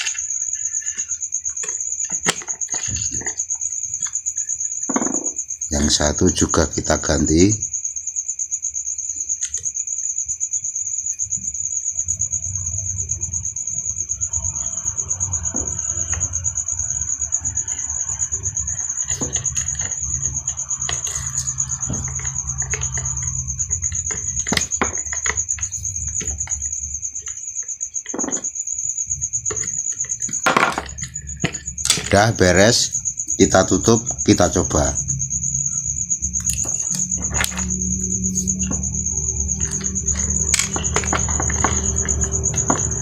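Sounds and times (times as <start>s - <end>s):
high-pitched insect-like trill: 0.0s - 43.0s
low hum: 34.0s - 43.0s.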